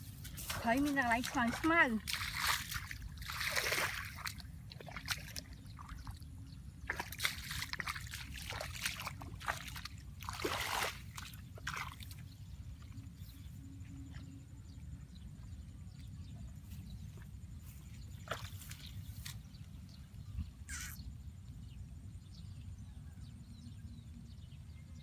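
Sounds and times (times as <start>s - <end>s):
shallow water splashing: 0.0s - 12.3s.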